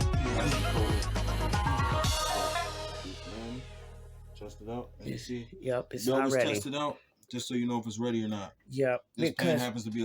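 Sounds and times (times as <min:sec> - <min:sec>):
electronic music with heavy bass: 0:00.0 - 0:04.2.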